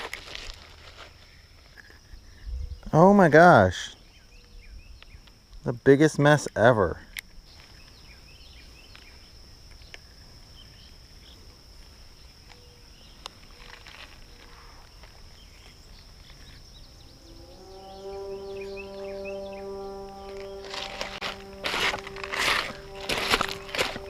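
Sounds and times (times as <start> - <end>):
high-pitched insect drone: 0.0 - 24.0
bird chirps: 15.4 - 24.0
steady pitched tone: 16.6 - 24.0.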